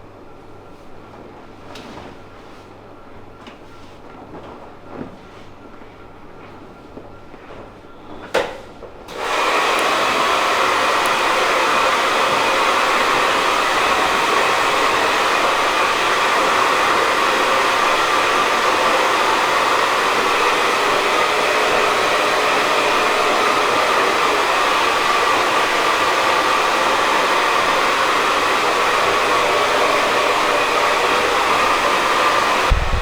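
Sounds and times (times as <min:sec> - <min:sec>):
hair dryer blowing: 0:09.1 - 0:33.0.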